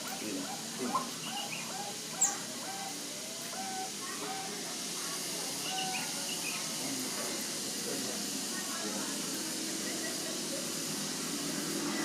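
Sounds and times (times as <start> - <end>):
doves cooing: 0.0 - 4.8, 5.6 - 6.2.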